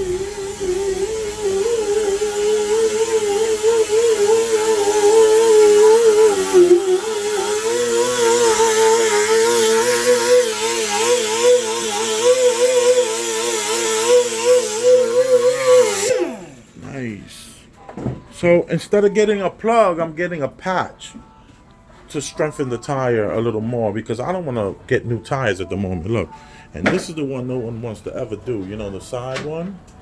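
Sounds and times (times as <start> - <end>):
machine motor whirring: 0.0 - 16.8.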